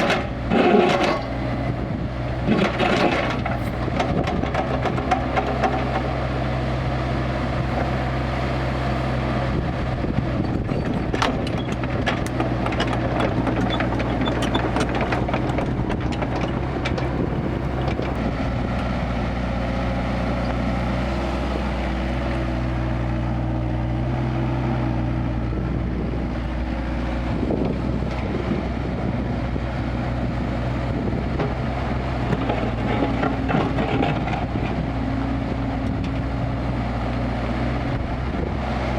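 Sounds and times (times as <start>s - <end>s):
excavator diesel engine running: 0.0s - 38.9s
knocks and clatters: 2.5s - 6.1s, 10.7s - 18.9s, 31.4s - 34.8s.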